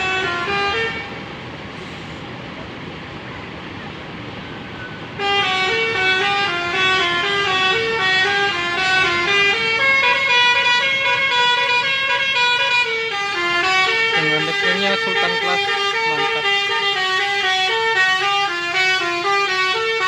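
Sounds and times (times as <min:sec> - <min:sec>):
multi-tone air horn melody: 0:00.0 - 0:01.2, 0:05.2 - 0:20.0.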